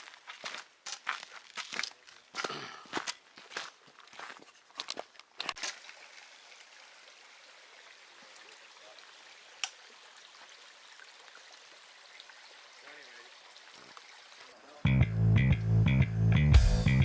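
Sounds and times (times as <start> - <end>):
footsteps on trail: 0.0 - 6.0.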